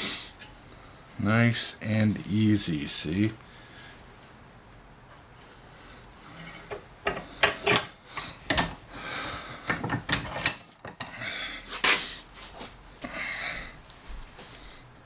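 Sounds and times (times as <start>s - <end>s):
wire rack scraping: 6.2s - 8.8s
metallic knocks and clinks: 9.7s - 11.1s.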